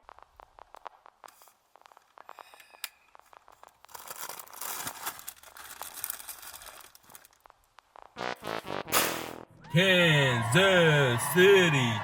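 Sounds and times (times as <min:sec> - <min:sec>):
rustling tearing noise: 0:03.3 - 0:07.5.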